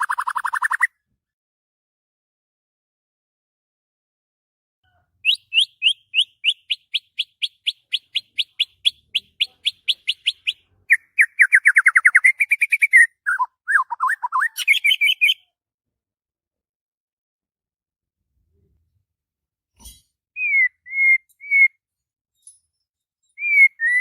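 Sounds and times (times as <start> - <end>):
bird singing: 5.2 - 15.5, 20.4 - 21.8, 23.2 - 24.0.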